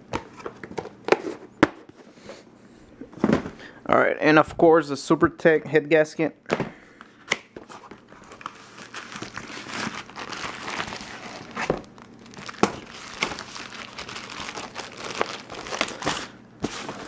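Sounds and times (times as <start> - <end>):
packaging crinkling: 7.8 - 17.0.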